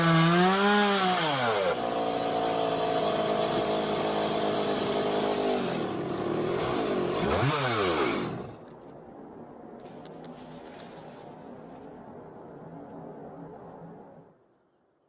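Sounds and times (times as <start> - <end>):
chainsaw engine revving: 0.0 - 8.6.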